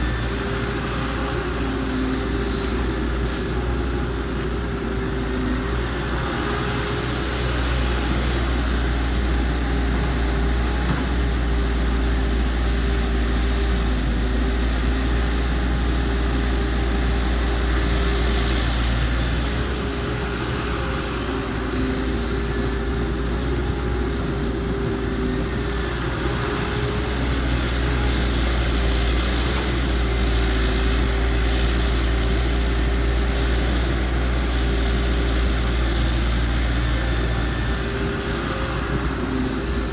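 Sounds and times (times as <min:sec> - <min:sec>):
heavy diesel engine droning: 0:00.0 - 0:39.9.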